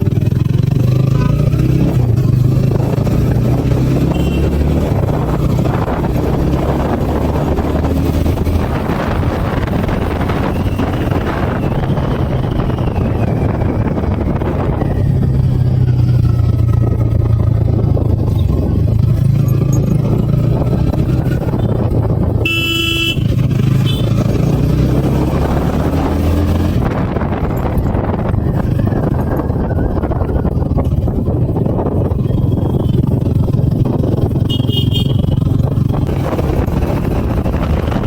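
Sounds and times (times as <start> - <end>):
motorcycle engine running: 0.0 - 38.0
wind noise on microphone: 0.0 - 38.0
vehicle horn: 4.1 - 4.6, 22.4 - 24.2, 34.4 - 35.4.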